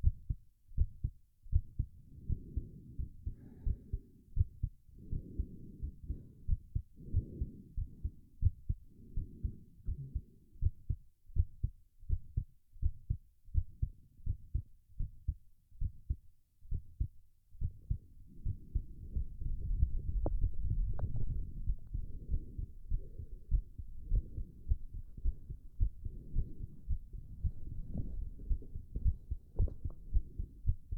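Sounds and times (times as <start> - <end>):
fast heartbeat thumps: 0.0 - 30.9
muffled heavy breathing: 2.0 - 10.5, 17.8 - 30.9.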